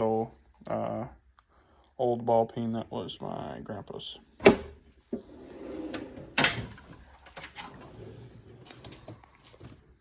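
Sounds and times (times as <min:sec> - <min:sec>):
drawer banging shut: 0:04.4 - 0:08.0
drawer rolling on slides: 0:05.1 - 0:09.7.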